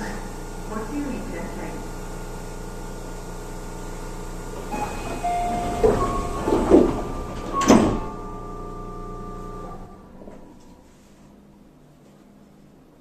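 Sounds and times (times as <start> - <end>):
stationary train hum: 0.0 - 13.0
sliding train doors thudding shut: 4.5 - 10.8
door chime tones: 4.7 - 10.2.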